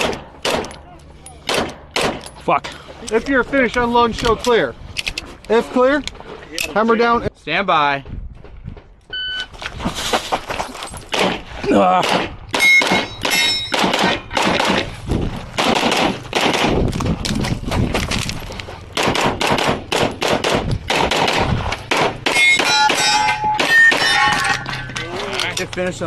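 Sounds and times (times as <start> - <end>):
pistol shots: 0.0 - 0.8, 1.4 - 2.3, 12.0 - 15.0, 15.6 - 16.9, 19.0 - 24.6
steel targets clanging: 12.6 - 14.4, 22.2 - 25.8.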